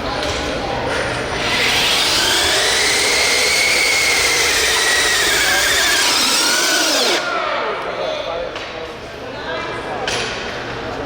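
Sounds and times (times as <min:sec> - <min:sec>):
electric motor whining: 0:01.3 - 0:07.4.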